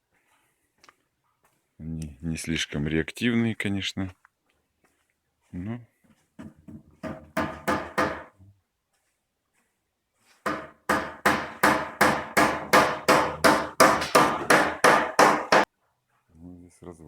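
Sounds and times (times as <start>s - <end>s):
hammer driving nails into wood: 6.4s - 8.3s, 10.5s - 15.7s.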